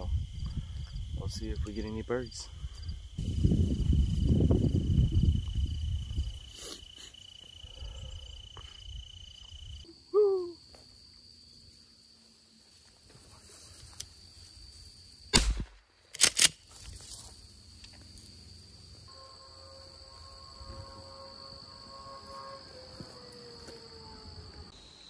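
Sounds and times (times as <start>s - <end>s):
insects droning: 0.0s - 25.0s
shotgun shots: 15.3s - 16.6s.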